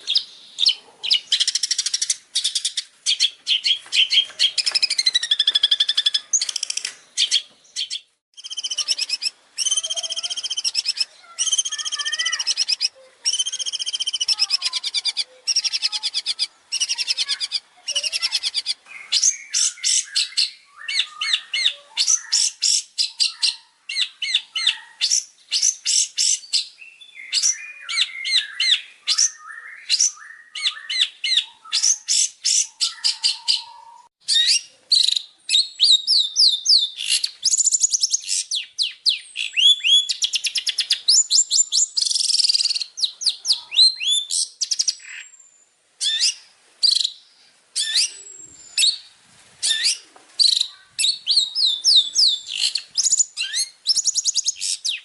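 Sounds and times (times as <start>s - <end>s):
songbird chirps and trills: 0.0s - 55.0s.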